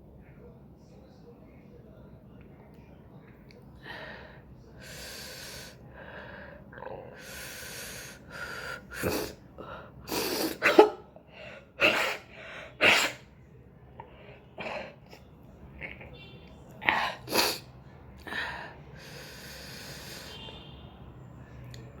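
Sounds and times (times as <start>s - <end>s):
person sneezing: 10.1s - 11.1s, 11.8s - 13.2s, 16.8s - 17.6s
breathy sounds: 16.8s - 20.4s.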